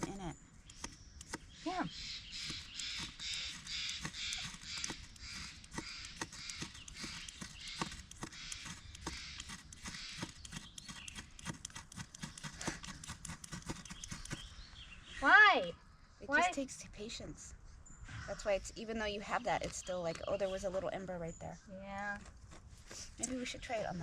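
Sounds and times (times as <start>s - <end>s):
ferro rod scraping: 2.4s - 14.5s.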